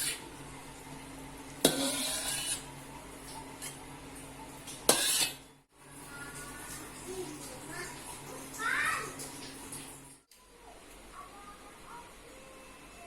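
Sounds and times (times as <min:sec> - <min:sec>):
utensil scraping pan: 0:00.0 - 0:00.3, 0:01.6 - 0:02.8, 0:04.7 - 0:05.5.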